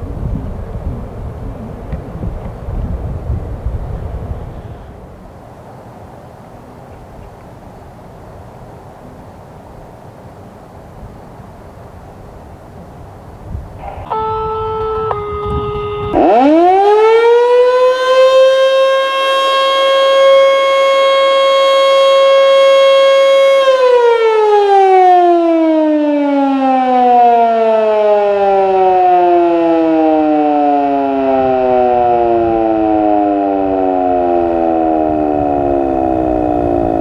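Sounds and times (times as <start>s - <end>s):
fire siren winding: 13.8s - 37.0s.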